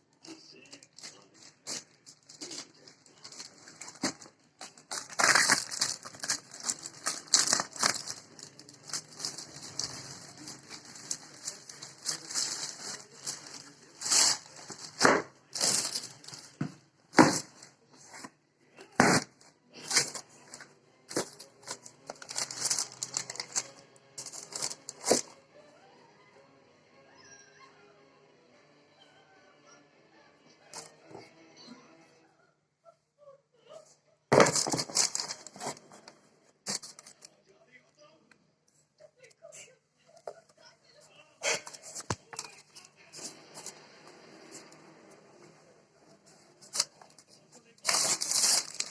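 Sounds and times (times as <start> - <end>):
paper and plastic crinkling: 0.6 - 18.3, 19.0 - 25.3, 34.3 - 37.3, 46.3 - 48.9
paper tearing: 1.1 - 16.6, 19.0 - 25.3, 34.3 - 36.0, 36.7 - 37.2, 46.6 - 48.9.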